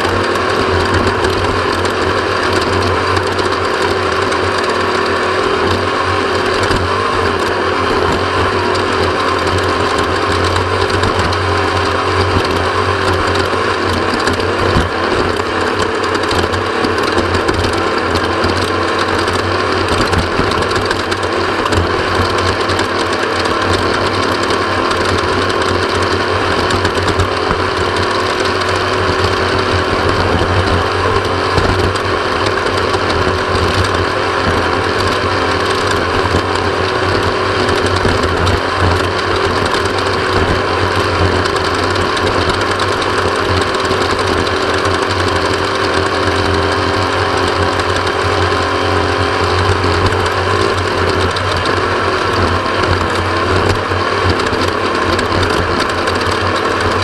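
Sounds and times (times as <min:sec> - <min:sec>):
off-road vehicle engine rattling: 0:00.0 - 0:57.0.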